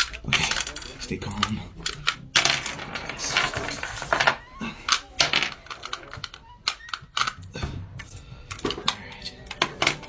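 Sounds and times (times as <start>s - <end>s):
plastic clicks and clatter: 0.0s - 10.0s.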